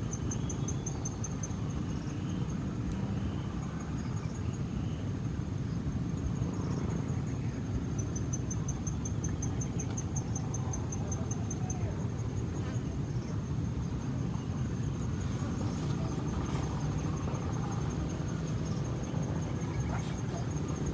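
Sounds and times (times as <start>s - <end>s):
insect chirping: 0.0s - 2.6s, 7.9s - 20.9s.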